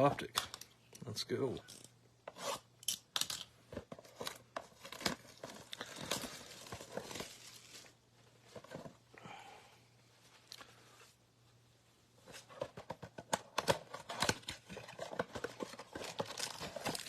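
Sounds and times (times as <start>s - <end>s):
plastic wrapping tearing and crinkling: 4.8s - 8.0s.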